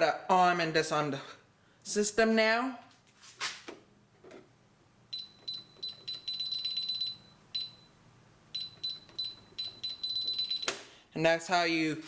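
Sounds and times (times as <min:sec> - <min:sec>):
keypad beeping: 0:05.2 - 0:07.8, 0:08.6 - 0:10.8.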